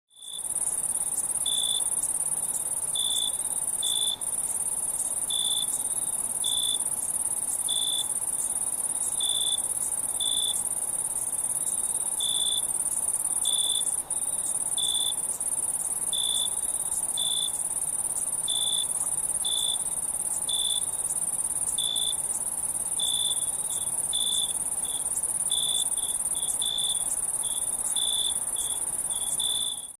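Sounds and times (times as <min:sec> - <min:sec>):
cricket chirping: 0:00.1 - 0:30.0
high-pitched insect trill: 0:00.2 - 0:30.0.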